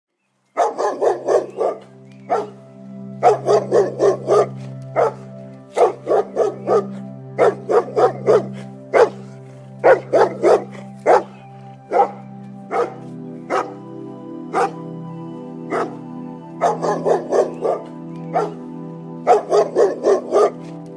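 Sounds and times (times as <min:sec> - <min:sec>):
background music: 0:00.2 - 0:20.9
dog barking: 0:00.6 - 0:02.6, 0:03.2 - 0:13.8, 0:14.5 - 0:14.8, 0:15.7 - 0:16.0, 0:16.6 - 0:18.6, 0:19.2 - 0:20.7.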